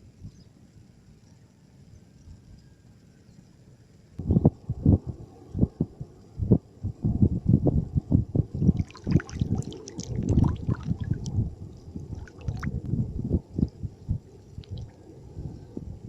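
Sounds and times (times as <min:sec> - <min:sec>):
low thumps and rumble: 0:04.2 - 0:16.0
water splashing: 0:08.6 - 0:12.9, 0:14.5 - 0:15.0.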